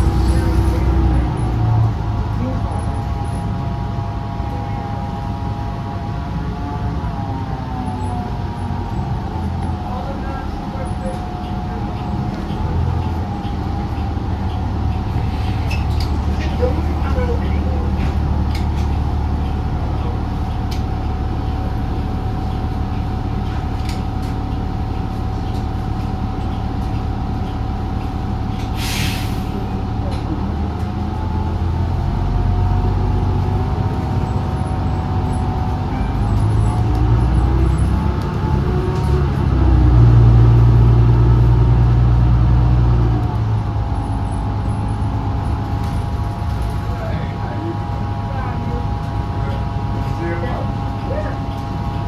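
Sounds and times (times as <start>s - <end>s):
bus drivetrain drone and whine: 0.0s - 52.0s
air brake hiss: 28.8s - 29.7s.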